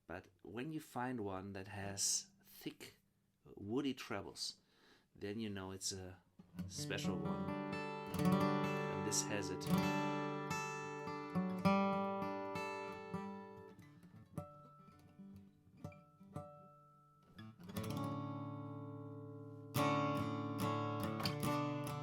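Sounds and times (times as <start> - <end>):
acoustic guitar playing: 6.5 - 22.0.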